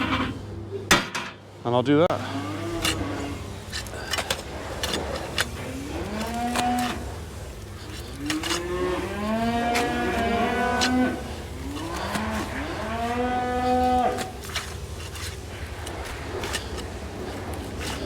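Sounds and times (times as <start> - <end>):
cattle mooing: 2.2 - 3.6, 5.6 - 7.3, 8.1 - 14.5.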